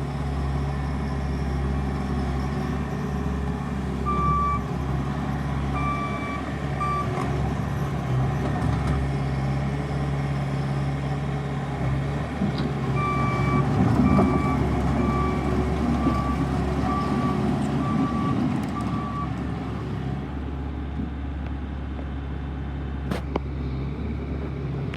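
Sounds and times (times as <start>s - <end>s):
diesel engine running: 0.0s - 24.9s
backup alarm beeping: 5.8s - 7.1s.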